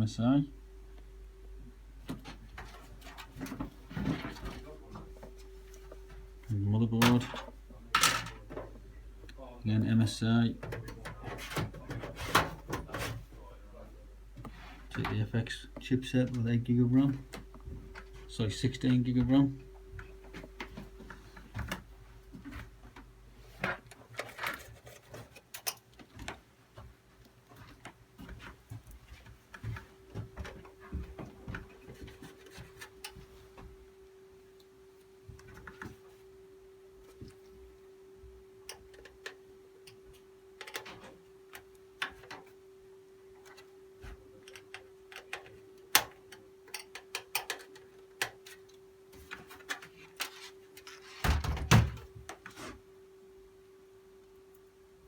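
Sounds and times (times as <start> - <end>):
steady hum: 0.0 - 55.0
computer parts clicking and tapping: 40.6 - 42.5, 44.4 - 50.9.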